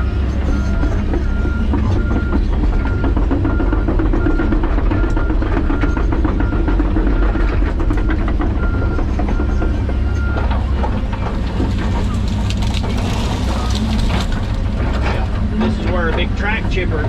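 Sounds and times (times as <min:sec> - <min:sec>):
excavator diesel engine: 0:00.0 - 0:17.0
roots and brush cracking: 0:11.2 - 0:15.4.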